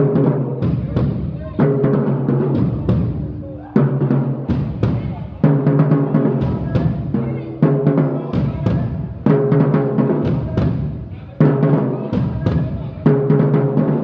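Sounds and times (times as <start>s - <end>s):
marching band brass and drums: 0.0s - 14.0s.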